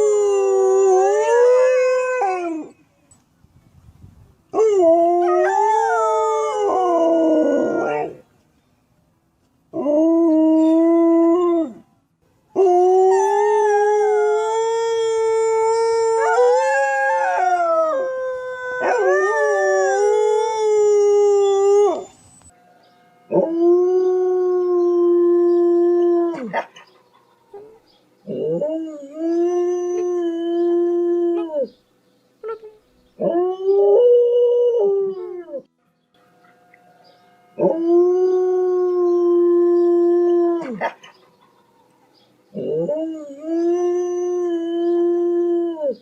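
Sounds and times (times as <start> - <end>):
dogs howling: 4.6 - 8.2, 12.6 - 22.2, 23.3 - 31.7, 37.5 - 41.6, 42.5 - 46.0.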